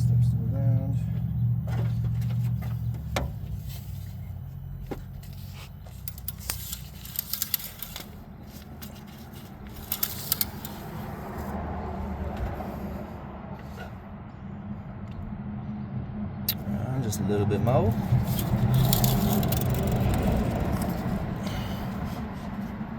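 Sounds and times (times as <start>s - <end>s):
metal tools clinking and clattering: 5.3s - 8.2s, 8.9s - 10.9s, 18.2s - 21.1s.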